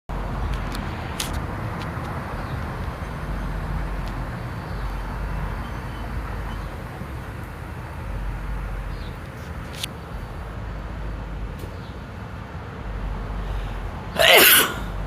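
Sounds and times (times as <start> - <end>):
traffic noise: 0.1 - 15.0
truck engine rumbling: 0.1 - 15.0.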